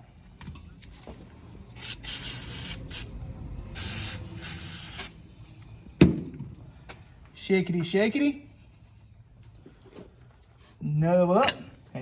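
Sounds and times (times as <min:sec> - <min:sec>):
aerosol spray can hissing: 0:03.8 - 0:05.1.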